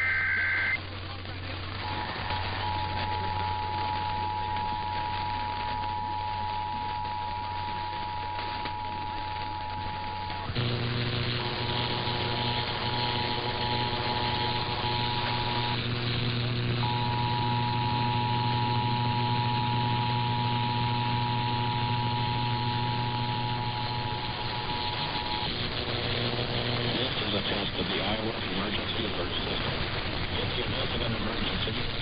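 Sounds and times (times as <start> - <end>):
two-tone alert signal: 0.0 - 0.8
low hum and hiss: 0.0 - 32.0.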